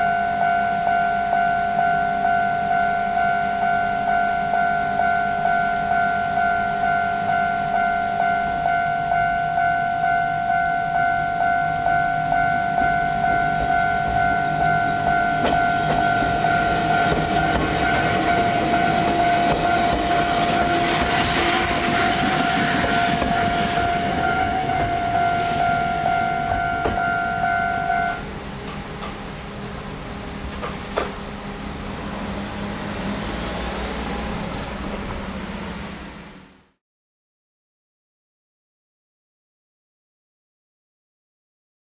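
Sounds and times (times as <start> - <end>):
level crossing alarm ringing: 0.0 - 29.1
train wheels rumbling and clicking: 11.7 - 36.6.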